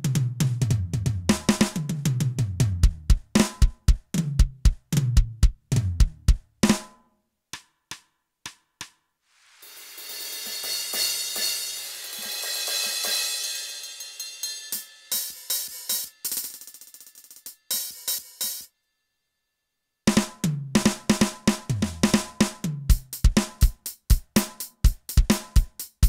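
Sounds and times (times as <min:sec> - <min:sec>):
fast tom fill: 0:00.0 - 0:06.9, 0:09.5 - 0:18.7, 0:20.1 - 0:26.0
electronic cymbal crash: 0:09.4 - 0:18.6.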